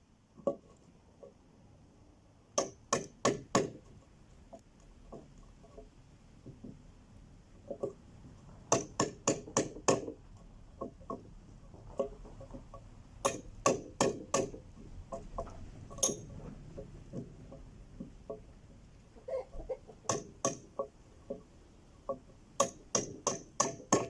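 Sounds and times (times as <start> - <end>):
soft knocks and scraping: 3.8 - 7.0, 14.4 - 22.4.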